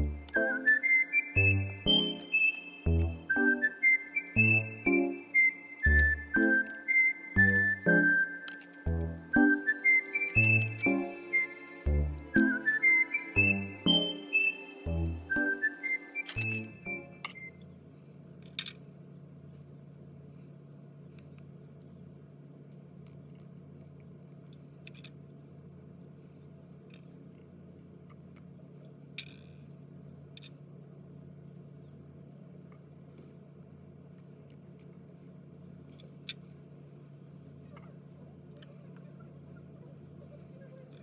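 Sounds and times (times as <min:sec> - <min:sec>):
tune with whistling: 0:00.0 - 0:17.6
steady low hum: 0:00.0 - 0:41.0.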